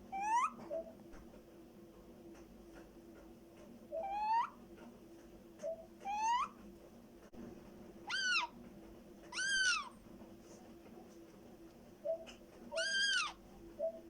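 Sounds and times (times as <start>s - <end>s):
parrot calling: 0.1s - 0.6s, 4.0s - 4.6s, 6.0s - 6.6s, 8.0s - 8.6s, 9.3s - 10.0s, 12.1s - 14.0s.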